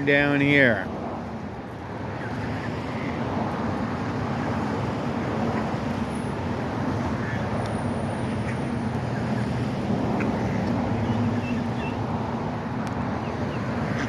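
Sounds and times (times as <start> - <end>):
low rumble of vehicles: 0.0 - 14.0.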